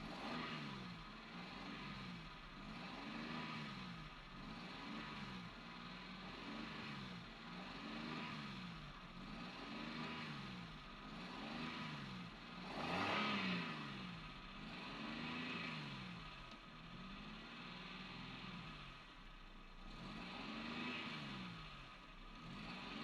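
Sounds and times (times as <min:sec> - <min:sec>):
car engine revving: 0:00.0 - 0:19.0, 0:19.8 - 0:23.0.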